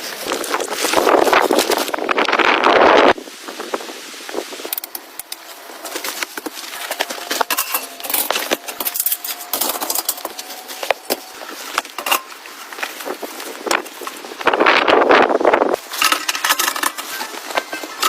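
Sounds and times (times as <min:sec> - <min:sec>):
small hard objects clinking: 0:04.8 - 0:14.3, 0:15.8 - 0:18.0
metallic rings: 0:06.8 - 0:12.4.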